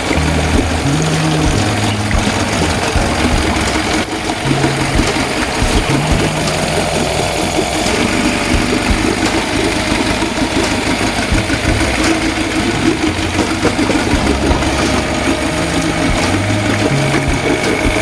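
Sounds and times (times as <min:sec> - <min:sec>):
outboard motor running: 0:00.0 - 0:18.0.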